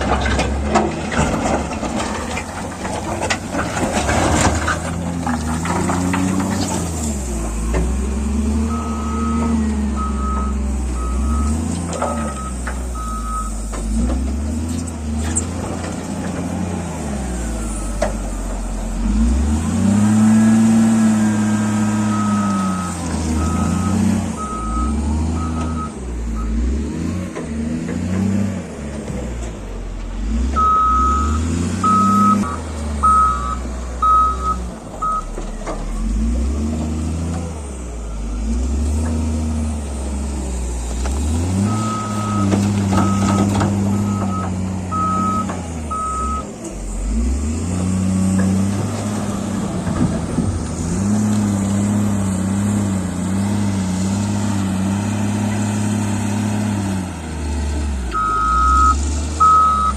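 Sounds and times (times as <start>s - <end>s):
heavy machine engine revving: 0.0s - 59.9s
reversing alarm beeping: 8.6s - 11.6s, 12.2s - 13.7s, 22.1s - 26.7s, 30.6s - 35.3s, 41.6s - 46.5s, 58.2s - 59.9s.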